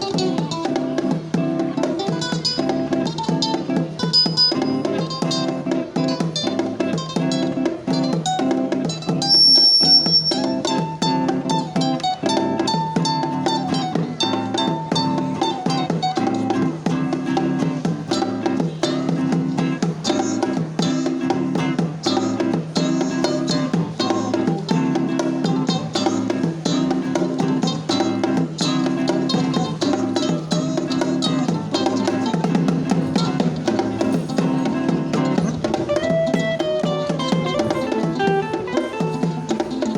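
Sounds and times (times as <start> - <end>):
acoustic guitar playing: 0.0 - 39.9.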